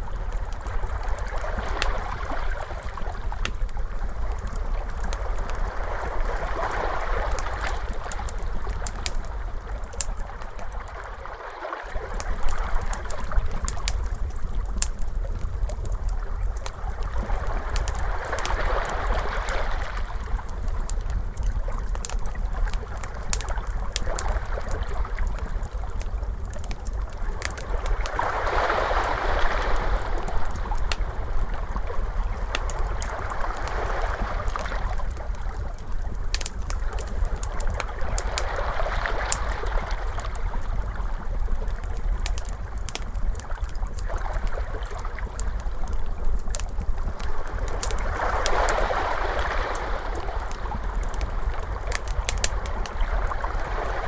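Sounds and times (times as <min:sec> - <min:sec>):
steady low rumble: 0:00.0 - 0:11.2, 0:12.0 - 0:38.8, 0:39.4 - 0:54.0
fire crackling and popping: 0:00.0 - 0:54.0
ocean waves washing in: 0:10.7 - 0:12.9, 0:27.7 - 0:35.4, 0:47.4 - 0:54.0.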